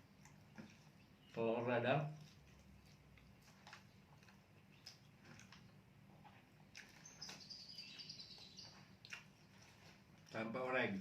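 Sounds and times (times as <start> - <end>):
person chewing food: 0.0 - 1.4, 2.1 - 10.5
bird twittering: 7.0 - 8.8.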